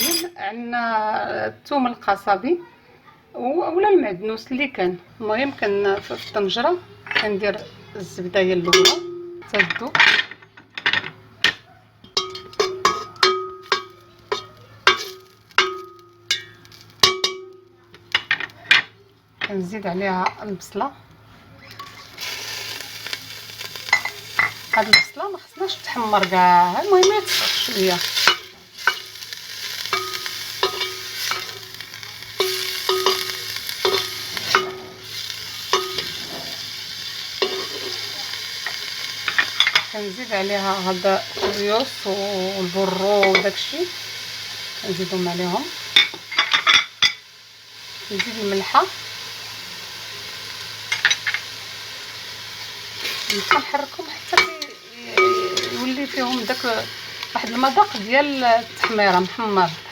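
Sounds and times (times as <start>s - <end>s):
onion sizzling in butter: 0.0s - 0.3s, 4.3s - 10.0s, 12.1s - 20.9s, 21.6s - 59.9s
metal spoon clinking in pot: 0.0s - 0.4s, 8.6s - 18.9s, 23.8s - 31.8s, 32.4s - 36.2s, 37.4s - 37.9s, 38.6s - 39.9s, 43.2s - 43.6s, 50.9s - 51.5s, 53.0s - 59.4s.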